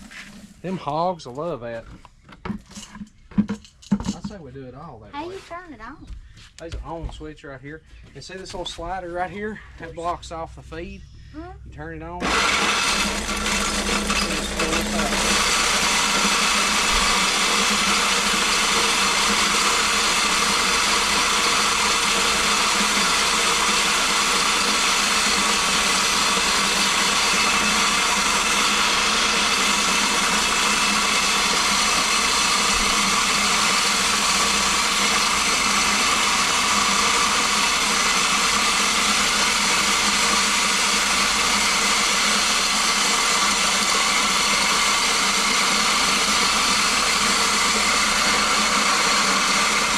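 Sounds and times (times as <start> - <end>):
electric grinder grinding corn: 0.0 - 0.8, 12.2 - 49.9.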